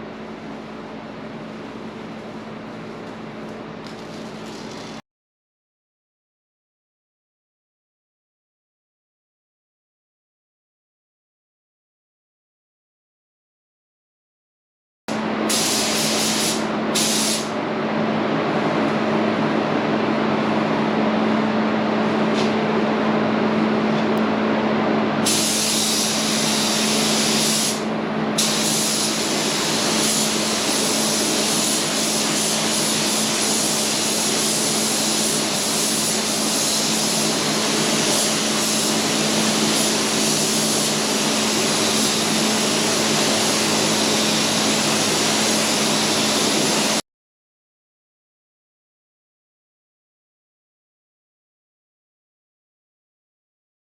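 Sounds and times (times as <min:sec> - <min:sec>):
spray gun hissing: 0:15.5 - 0:17.5, 0:25.2 - 0:47.0.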